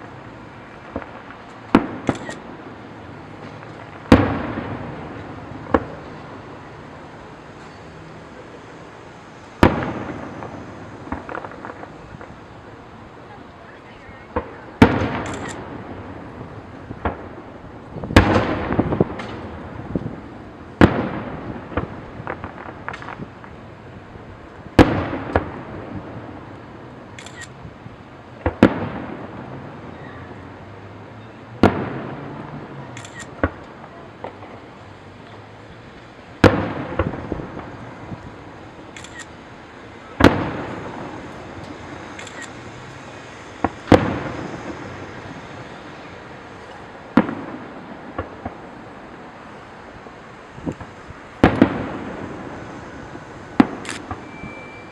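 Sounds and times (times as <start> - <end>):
fireworks pops and crackling: 0.0 - 30.4, 31.5 - 54.9
fireworks shells bursting: 0.8 - 2.5, 14.4 - 15.7, 36.4 - 48.6, 50.7 - 54.9.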